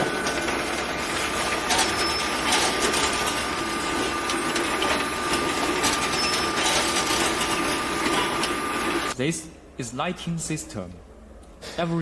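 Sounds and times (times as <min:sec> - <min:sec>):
machine clattering and clicking: 0:00.0 - 0:09.2.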